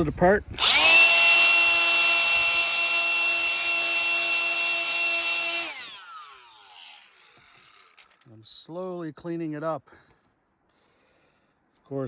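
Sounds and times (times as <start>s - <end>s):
electric motor whining: 0.6s - 8.2s.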